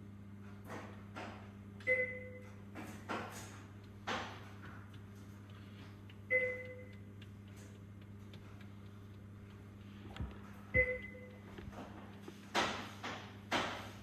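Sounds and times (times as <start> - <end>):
low electrical hum: 0.0 - 14.0
short pinging tones: 6.3 - 7.1, 10.8 - 11.4.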